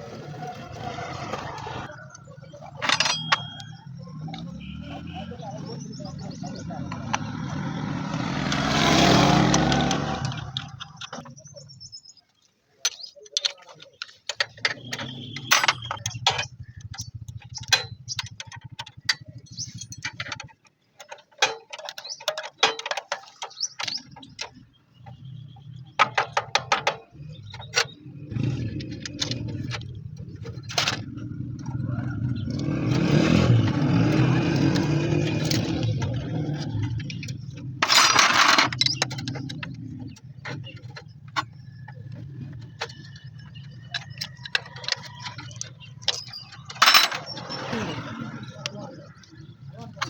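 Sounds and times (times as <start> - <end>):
sharp clicks and knocks: 2.6 - 4.6, 12.8 - 47.9.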